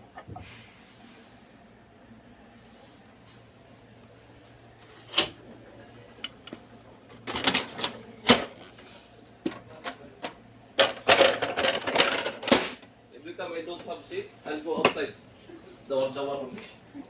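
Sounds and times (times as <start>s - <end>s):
plastic printer parts clattering: 7.2s - 8.7s, 10.8s - 12.8s.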